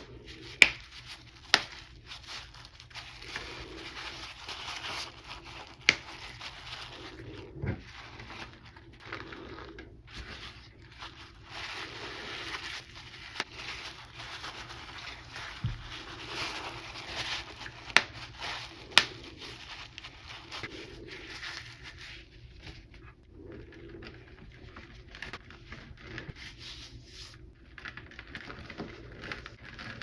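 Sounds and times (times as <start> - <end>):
bubble wrap bubbles popping: 0.0 - 23.2
bubble wrap crinkling: 0.0 - 30.0.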